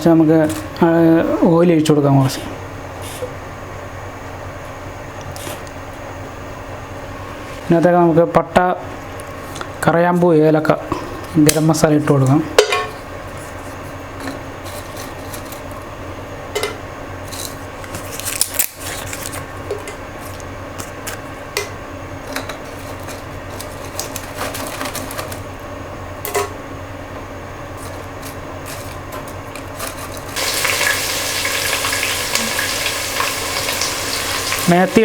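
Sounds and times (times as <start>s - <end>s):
loud frying sizzle: 27.6s - 35.0s
spices in hot oil: 30.1s - 35.0s.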